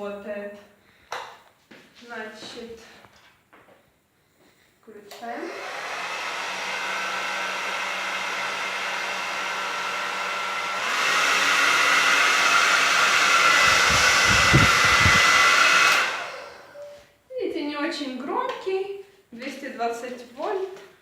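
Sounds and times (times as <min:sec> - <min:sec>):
hair dryer whirring: 0:05.1 - 0:17.0
air stream buffeting: 0:12.2 - 0:16.6.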